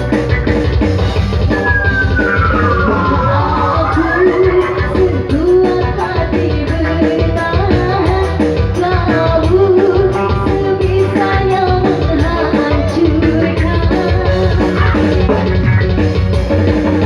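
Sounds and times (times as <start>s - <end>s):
live band drums bass and guitar: 0.0s - 17.0s
person singing: 2.2s - 15.4s.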